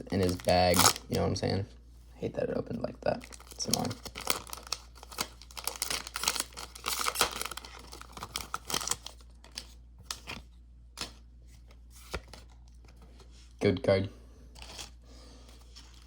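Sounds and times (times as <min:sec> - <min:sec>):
foil wrapper crinkling and tearing: 0:00.0 - 0:01.2, 0:03.2 - 0:10.4.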